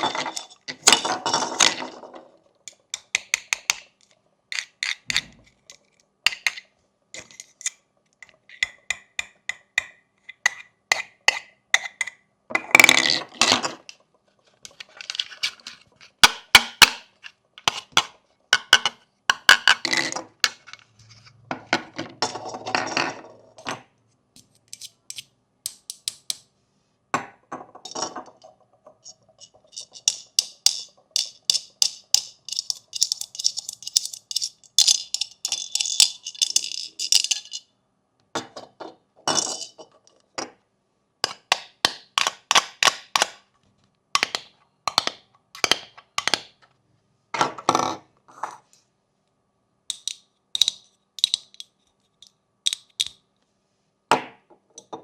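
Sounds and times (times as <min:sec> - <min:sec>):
fidget toy pieces clicking: 0:30.0 - 0:37.6, 0:49.9 - 0:51.7, 0:52.7 - 0:53.2.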